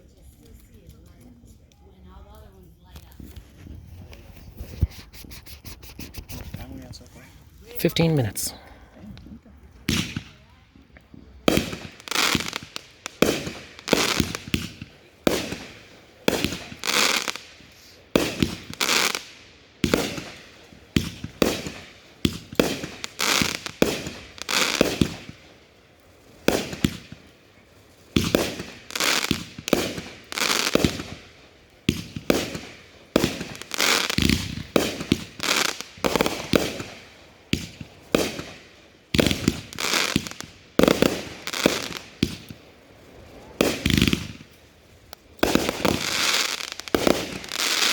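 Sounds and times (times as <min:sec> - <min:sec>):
fireworks bangs with crackle: 0:09.8 - 0:47.9.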